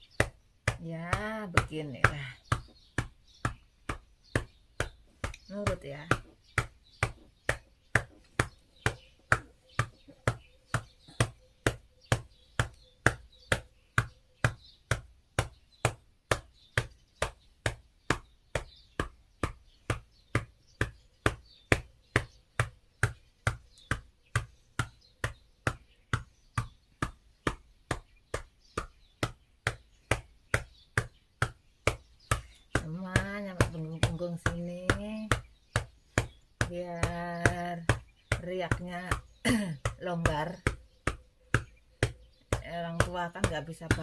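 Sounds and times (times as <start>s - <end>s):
hand slapping a back: 0.0s - 44.0s.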